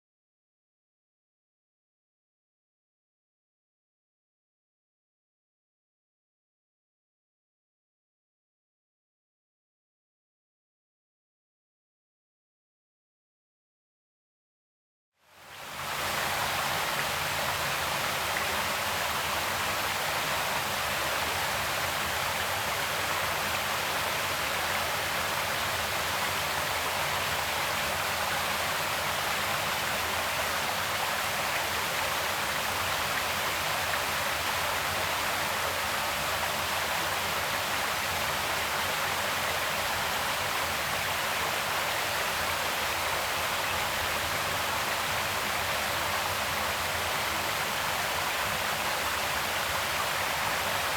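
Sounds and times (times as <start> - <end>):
creek water flowing: 15.4 - 50.9.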